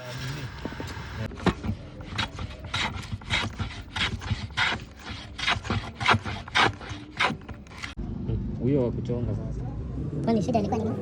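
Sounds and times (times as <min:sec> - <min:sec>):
tool scraping wood: 0:00.6 - 0:08.0.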